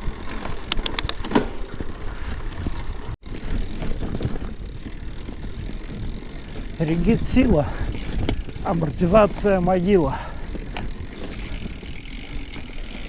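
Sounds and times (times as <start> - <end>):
wind on camera: 0.0 - 12.7
bike tyres rumbling: 0.0 - 13.0
sharp clicks: 0.6 - 1.4.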